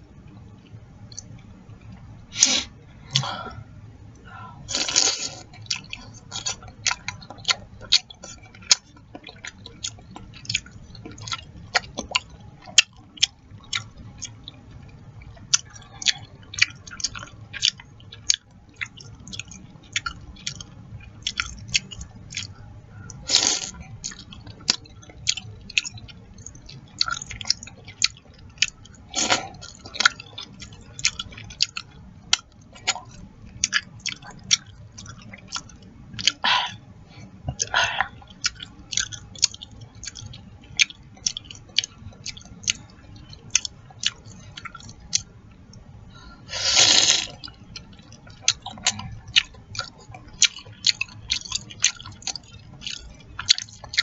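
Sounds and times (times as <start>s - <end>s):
wet chewing and lip smacks: 0.3s - 3.3s, 4.7s - 45.9s, 47.0s - 54.0s
slurping: 2.4s - 3.3s, 4.6s - 7.3s, 46.5s - 47.4s.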